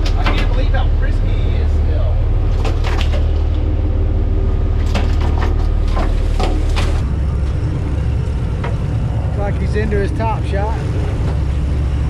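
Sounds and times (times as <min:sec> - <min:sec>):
boat engine rumbling: 0:00.0 - 0:12.0
sharp knocks and clatters: 0:04.8 - 0:07.0.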